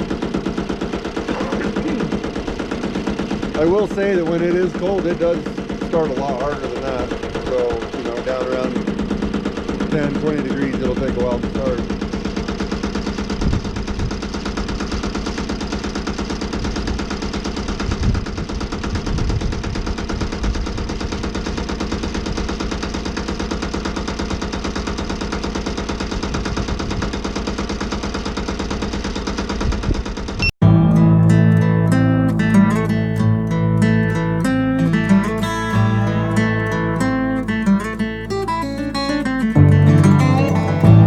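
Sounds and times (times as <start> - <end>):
small gasoline engine running: 0.0 - 30.8, 31.5 - 41.0.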